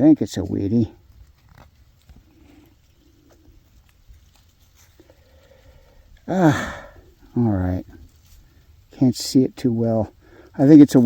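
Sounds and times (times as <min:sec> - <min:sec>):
soft rustling: 0:00.0 - 0:06.3, 0:07.0 - 0:11.0
man grunting: 0:06.3 - 0:06.9.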